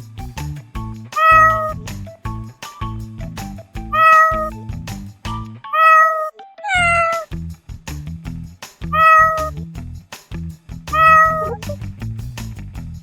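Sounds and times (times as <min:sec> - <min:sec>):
music with steady beat: 0:00.0 - 0:05.6
cat meowing: 0:01.2 - 0:01.8, 0:03.9 - 0:04.5, 0:05.7 - 0:07.3, 0:09.0 - 0:09.5, 0:11.0 - 0:11.7.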